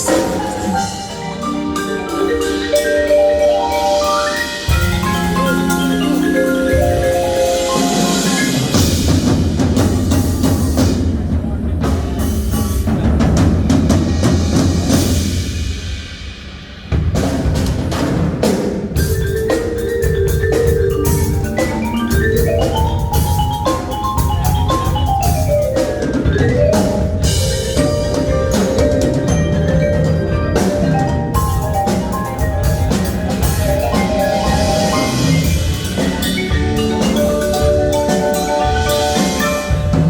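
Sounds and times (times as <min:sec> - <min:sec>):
marimbas and mallet percussion: 0:00.0 - 0:16.3, 0:16.9 - 0:40.0
marching drums: 0:00.0 - 0:40.0.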